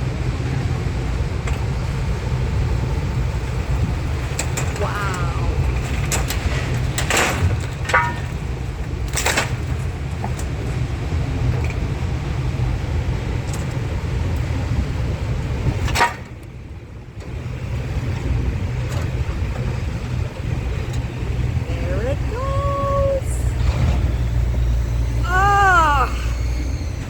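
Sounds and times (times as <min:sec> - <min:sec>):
vehicle engine rumbling: 0:00.0 - 0:27.0
sharp knocks and rattles: 0:05.6 - 0:11.8.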